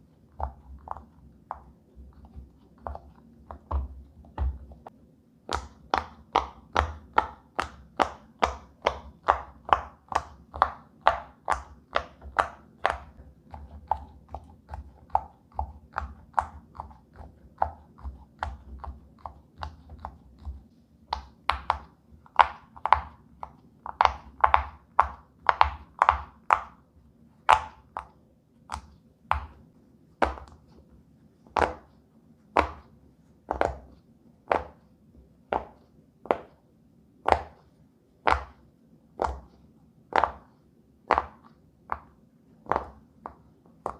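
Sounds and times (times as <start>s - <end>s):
pop-it toy bubbles popping: 5.5s - 26.8s, 27.4s - 29.6s, 30.2s - 30.7s, 31.6s - 31.9s, 39.2s - 39.5s, 40.1s - 40.5s.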